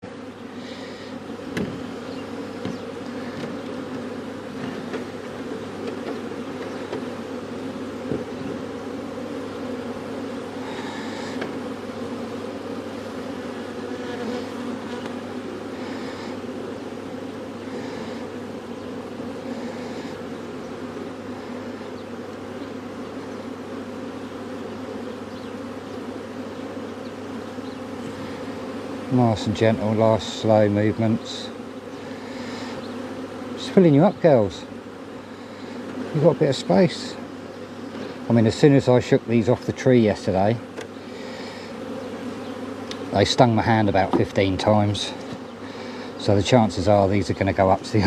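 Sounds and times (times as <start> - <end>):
honeybees buzzing: 0.0 - 48.0
light knocks: 1.5 - 1.8, 2.6 - 2.8.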